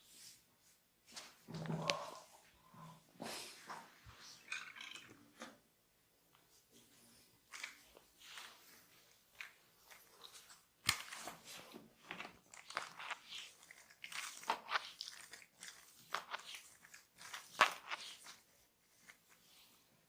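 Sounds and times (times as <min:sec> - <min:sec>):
hands rubbing skin and hair: 0:06.3 - 0:19.8.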